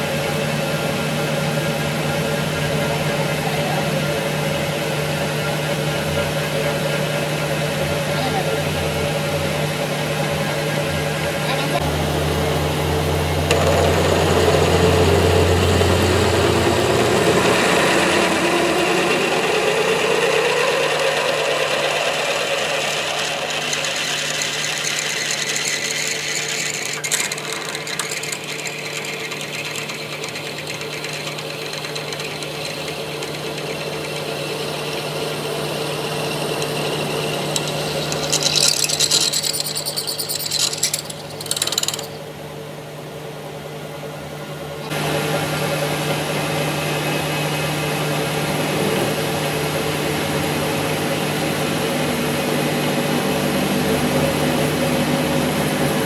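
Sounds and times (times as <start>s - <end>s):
machine tool humming: 0.0s - 42.2s, 44.9s - 56.0s
hissing metal cutting: 0.1s - 30.1s, 44.9s - 56.0s.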